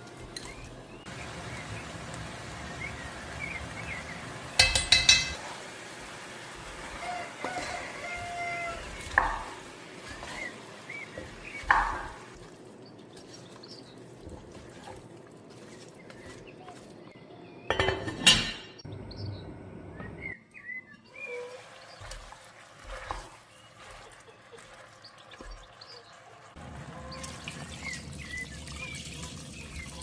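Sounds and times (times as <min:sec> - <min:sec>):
cookware and utensils clinking: 0:04.5 - 0:05.7, 0:07.3 - 0:12.4, 0:17.6 - 0:18.9.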